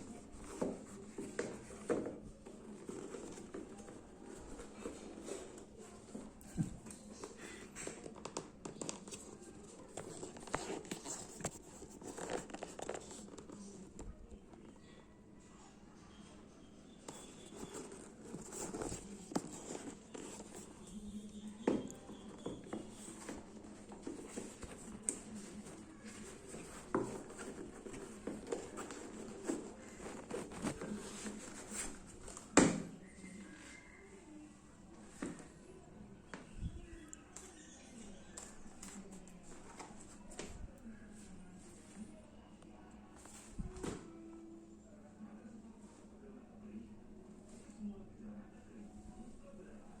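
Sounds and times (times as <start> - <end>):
packaging rustling and crinkling: 17.1 - 20.8, 22.3 - 32.6.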